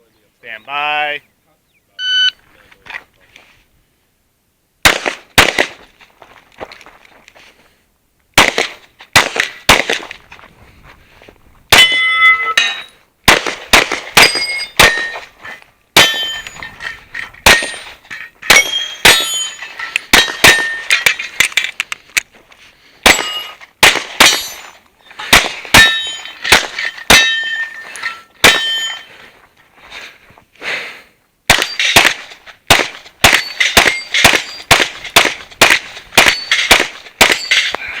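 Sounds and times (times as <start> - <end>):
rapid pistol fire: 4.8 - 5.8, 8.4 - 10.0, 13.3 - 15.0, 23.0 - 24.5, 31.5 - 37.5
steel targets ringing: 11.7 - 13.0, 14.2 - 15.3, 16.0 - 21.4, 23.0 - 29.2, 31.5 - 32.3, 33.2 - 37.9.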